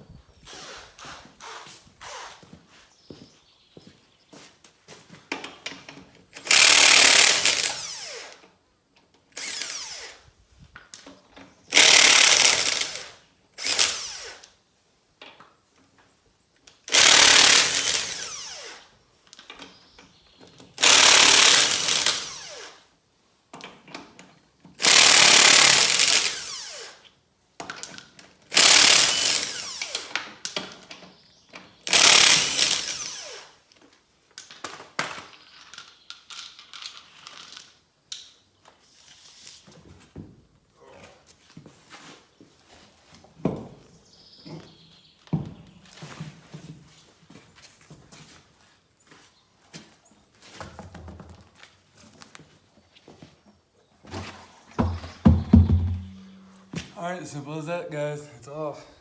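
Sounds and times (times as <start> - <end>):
impact wrench hammering: 6.4 - 7.8, 11.8 - 13.0, 20.8 - 22.3, 31.9 - 33.0, 54.8 - 56.8.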